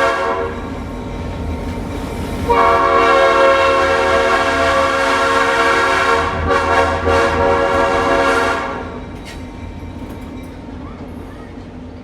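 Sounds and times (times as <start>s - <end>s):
locomotive horn chord: 0.0s - 0.6s, 2.5s - 9.0s
low rumble of train: 0.0s - 12.0s.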